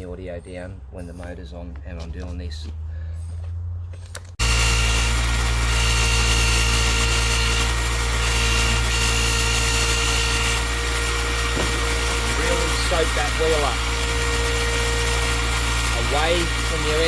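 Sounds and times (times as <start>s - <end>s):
low hum: 2.7s - 17.0s
polishing motor whining: 4.4s - 17.0s.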